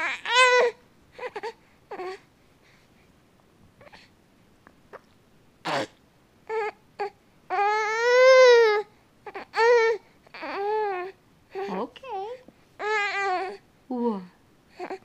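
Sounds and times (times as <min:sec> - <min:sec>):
baby crying: 0:00.0 - 0:02.2, 0:06.5 - 0:13.6
baby grunting: 0:04.9 - 0:07.1.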